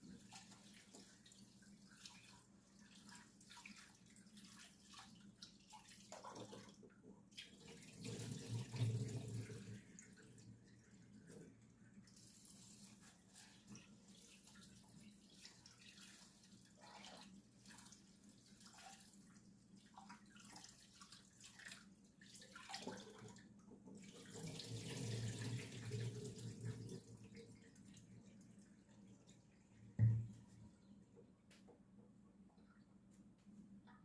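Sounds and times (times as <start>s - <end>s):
tap water running into sink: 5.4s - 10.4s, 22.6s - 28.1s, 30.0s - 30.5s.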